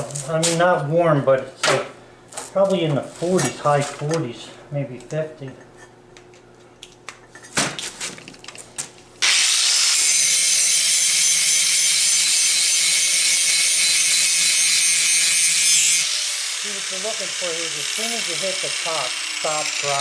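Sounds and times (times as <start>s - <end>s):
angle grinder grinding steel: 9.2s - 20.0s.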